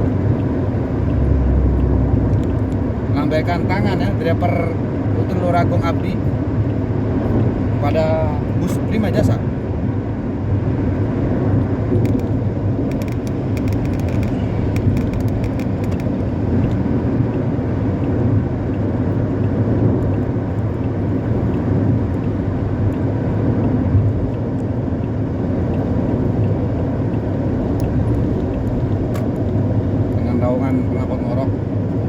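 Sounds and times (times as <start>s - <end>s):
bus exhaust growling drone: 0.0s - 4.2s
engine and road rumble: 0.0s - 32.0s.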